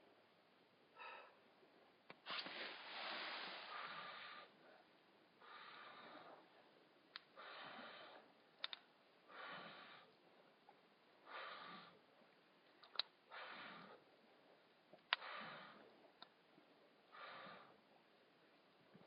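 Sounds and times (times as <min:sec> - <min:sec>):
slow breathing close up: 0:00.9 - 0:01.6, 0:02.3 - 0:08.6, 0:09.2 - 0:12.3, 0:13.2 - 0:18.2
sharp clicks: 0:08.6 - 0:08.9, 0:12.8 - 0:13.1.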